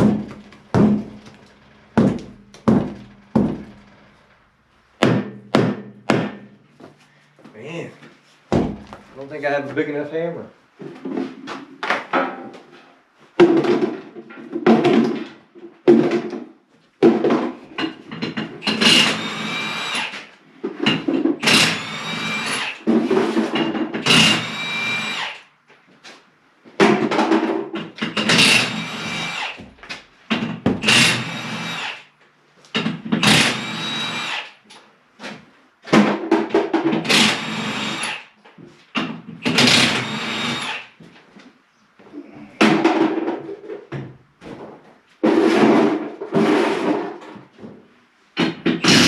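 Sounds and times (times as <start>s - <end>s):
impact wrench whining: 0.0s - 4.6s, 18.6s - 20.3s, 21.4s - 22.9s, 24.0s - 25.4s, 28.0s - 32.1s, 32.8s - 34.6s, 37.0s - 38.3s, 39.0s - 41.0s, 48.5s - 49.0s.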